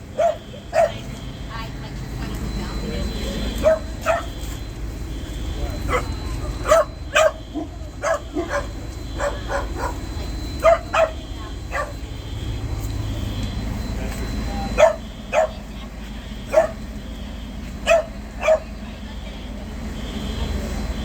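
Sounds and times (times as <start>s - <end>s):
low steady rumble: 0.0s - 21.0s
dog barking: 0.1s - 1.1s, 3.6s - 4.4s, 5.8s - 12.0s, 14.8s - 15.7s, 16.4s - 16.9s, 17.8s - 18.8s.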